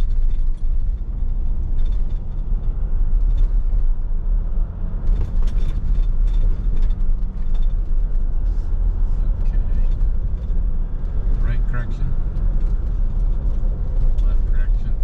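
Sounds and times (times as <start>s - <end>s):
car engine and tyre noise: 0.0s - 15.0s
faint light rattles: 5.0s - 15.0s.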